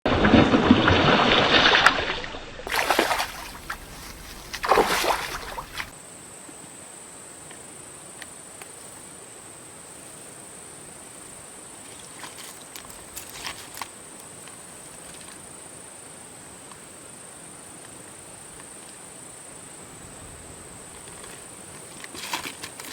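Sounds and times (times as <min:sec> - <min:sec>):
water splashing and sloshing: 0:00.0 - 0:06.0
short splashes: 0:00.1 - 0:06.0
faint steady hiss: 0:02.7 - 0:22.9.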